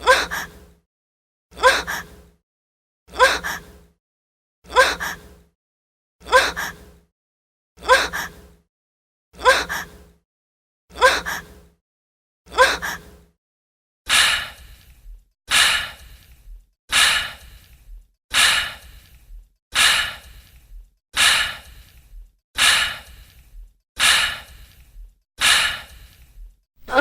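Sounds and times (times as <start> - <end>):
woman gasping: 26.8 - 27.0.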